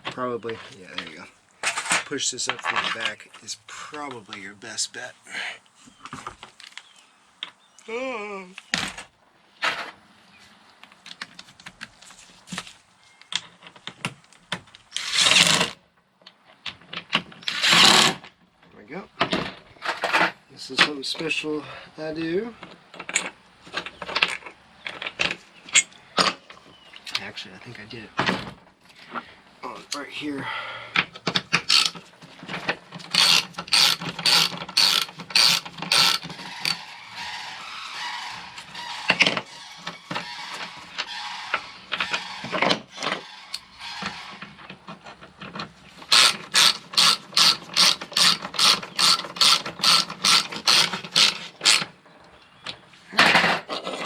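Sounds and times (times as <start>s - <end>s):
ratchet wrench clicking: 31.6s - 32.0s, 33.1s - 36.8s, 46.1s - 51.8s
short loud rasping burst: 33.1s - 42.6s, 46.0s - 51.8s.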